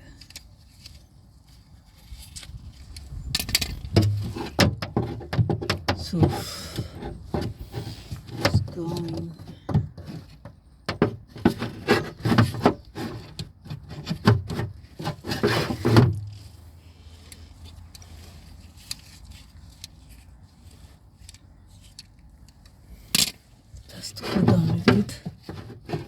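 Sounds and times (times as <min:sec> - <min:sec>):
scraping and knocking on door lock: 0:03.4 - 0:16.4, 0:24.2 - 0:26.0.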